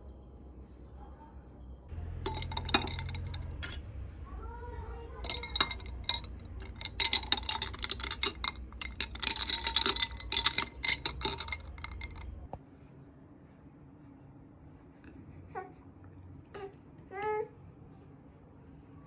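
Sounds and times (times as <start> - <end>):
spoon clinking against glass: 2.2 - 3.8, 5.2 - 12.5.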